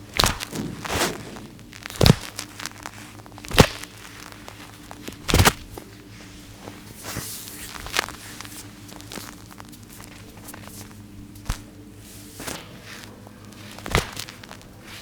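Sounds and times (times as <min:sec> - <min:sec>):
hands slapping on skin: 0:00.2 - 0:02.4, 0:10.4 - 0:11.7, 0:13.7 - 0:15.0.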